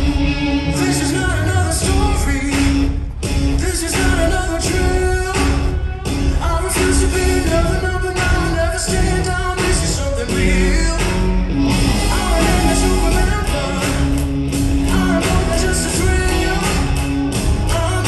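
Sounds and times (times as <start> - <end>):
upbeat show music with singing: 0.0 - 18.0.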